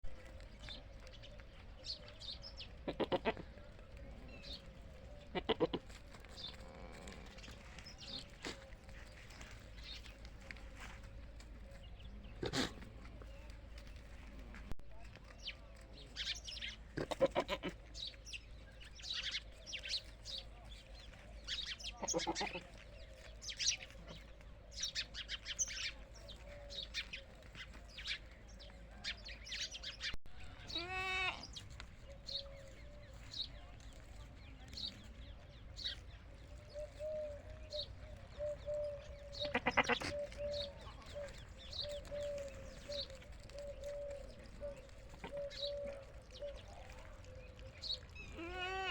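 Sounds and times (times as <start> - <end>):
goats bleating: 2.8 - 3.5, 5.3 - 6.0, 17.0 - 17.9, 22.0 - 22.7, 30.6 - 31.6, 39.4 - 40.3, 48.3 - 48.9.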